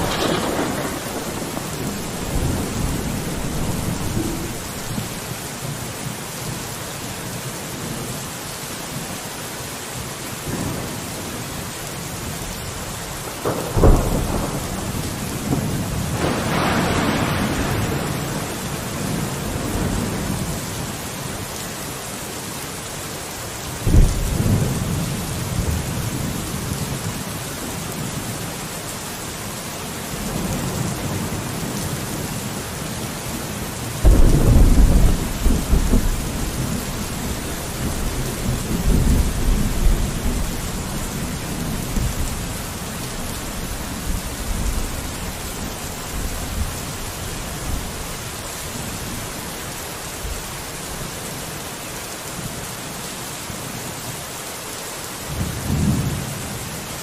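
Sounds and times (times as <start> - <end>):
thunder rumbling: 0.0 - 5.4, 13.0 - 20.9, 23.8 - 28.4, 33.8 - 49.3
rain on a window: 0.0 - 57.0.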